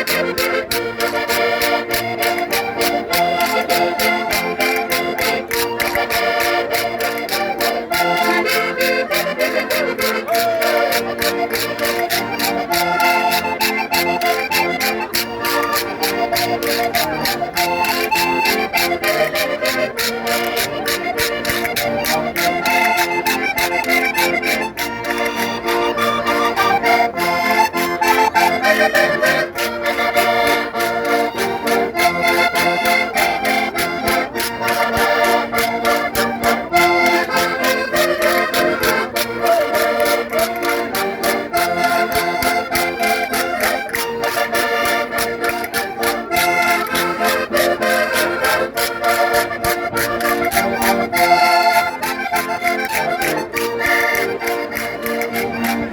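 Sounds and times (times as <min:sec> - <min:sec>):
concertinas playing dance tune: 0:00.0 - 0:55.9.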